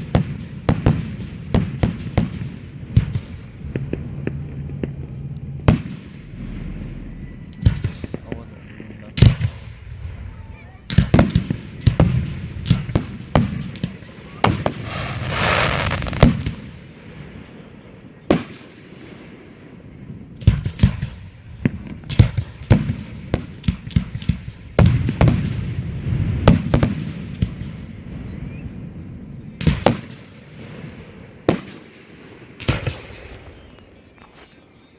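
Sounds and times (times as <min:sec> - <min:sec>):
fireworks bangs: 0:14.4 - 0:16.8.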